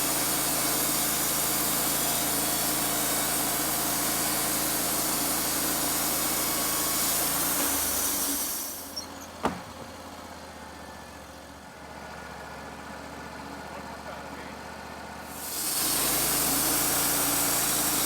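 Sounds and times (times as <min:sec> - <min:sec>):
bandsaw blade hissing through wood: 0:00.0 - 0:09.0, 0:15.3 - 0:18.0.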